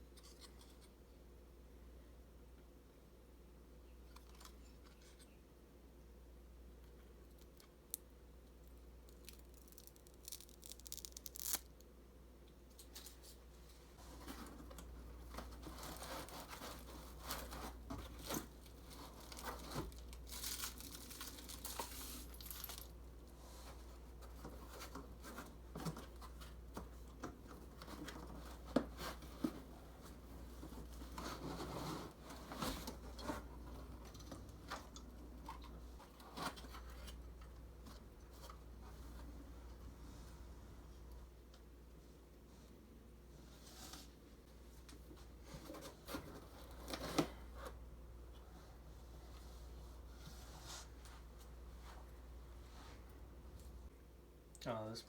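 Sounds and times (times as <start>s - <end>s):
packaging tearing and crinkling: 9.1s - 11.8s, 19.2s - 22.2s.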